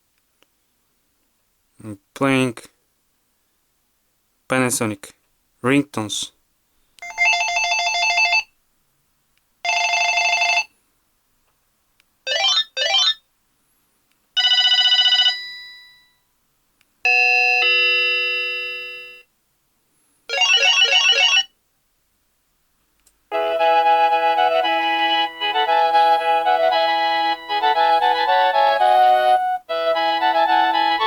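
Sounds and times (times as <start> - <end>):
melodic ringtone tune: 7.0 - 8.4, 12.3 - 13.2, 17.1 - 19.2, 20.3 - 21.5, 23.3 - 31.0
phone trilling rings: 7.0 - 8.4, 9.7 - 10.7, 14.4 - 16.1, 20.3 - 21.5.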